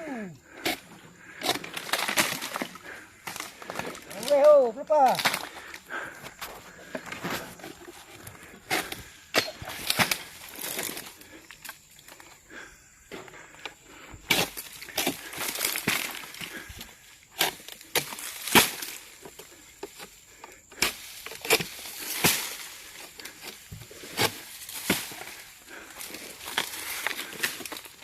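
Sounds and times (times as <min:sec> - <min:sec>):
twigs cracking: 0:01.2 - 0:12.3, 0:14.3 - 0:28.0
rustling in dry leaves: 0:01.7 - 0:05.8, 0:20.8 - 0:28.0.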